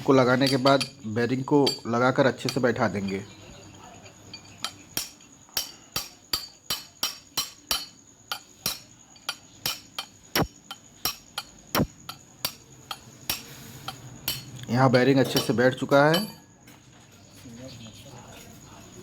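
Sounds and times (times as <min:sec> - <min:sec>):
hammer striking metal: 0:05.0 - 0:08.8, 0:09.6 - 0:13.5.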